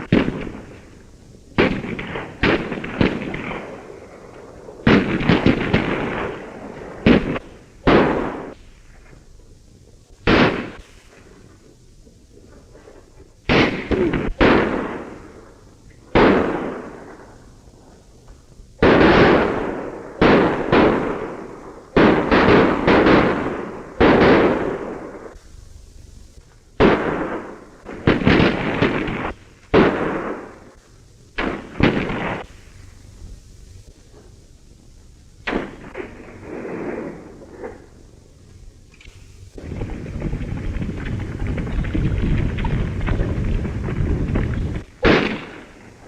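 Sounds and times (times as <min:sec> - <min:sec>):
echoing gunshots: 0:00.0 - 0:01.0, 0:01.6 - 0:08.8, 0:10.2 - 0:11.4, 0:13.5 - 0:17.5, 0:18.8 - 0:25.4, 0:26.8 - 0:30.8, 0:31.4 - 0:32.8, 0:35.4 - 0:38.0, 0:39.5 - 0:46.0.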